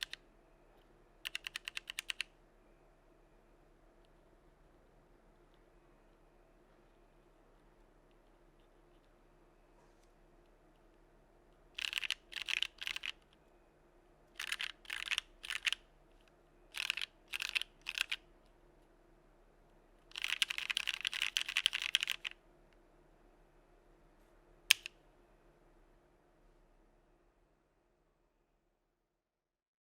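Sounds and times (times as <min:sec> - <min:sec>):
mechanical keyboard typing: 0:00.0 - 0:00.2, 0:01.2 - 0:02.3, 0:11.8 - 0:13.3, 0:14.4 - 0:15.8, 0:16.7 - 0:18.3, 0:20.1 - 0:22.4, 0:24.7 - 0:24.9.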